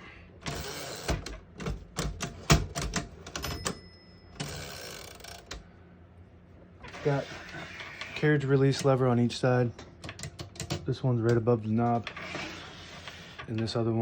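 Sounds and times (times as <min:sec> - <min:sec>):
typewriter carriage rattling: 0:00.4 - 0:03.8
typewriter bell ring: 0:03.3 - 0:05.6.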